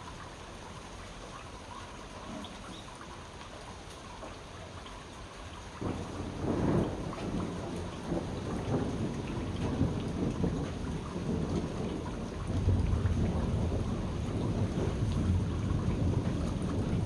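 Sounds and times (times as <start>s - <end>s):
steady rain falling: 0.0s - 17.0s
thunder rumbling: 5.8s - 17.0s.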